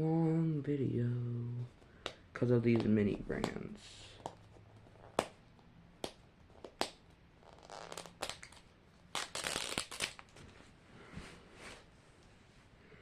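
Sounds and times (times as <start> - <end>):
plastic wrapper crinkling: 7.6 - 10.4.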